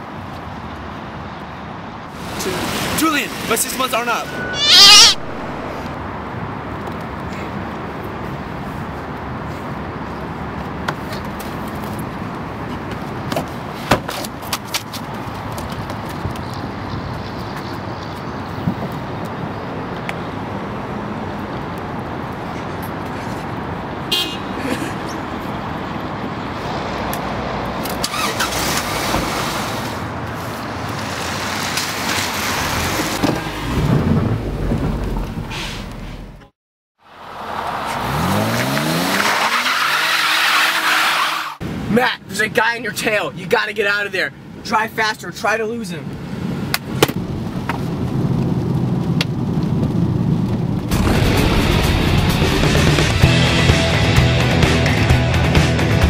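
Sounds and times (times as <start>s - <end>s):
road noise: 0.0s - 56.0s
car engine: 2.2s - 6.6s, 37.1s - 41.6s
car running: 27.8s - 36.5s.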